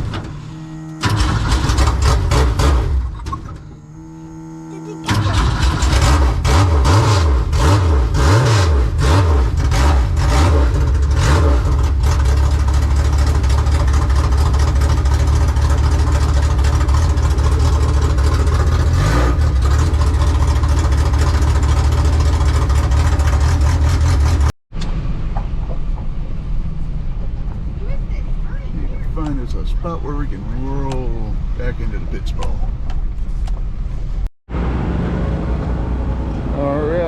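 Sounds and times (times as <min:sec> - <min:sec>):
stock car engine revving: 0:00.0 - 0:24.5
quieter engine and outdoor sound: 0:00.0 - 0:37.0.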